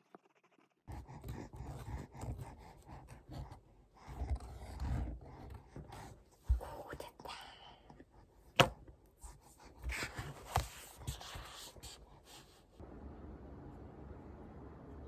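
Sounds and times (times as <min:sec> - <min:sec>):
steady low hum: 0:12.8 - 0:15.0.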